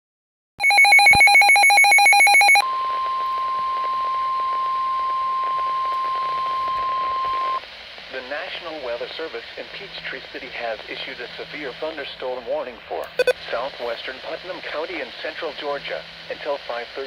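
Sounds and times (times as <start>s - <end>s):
steady alarm tone: 0.6s - 2.6s.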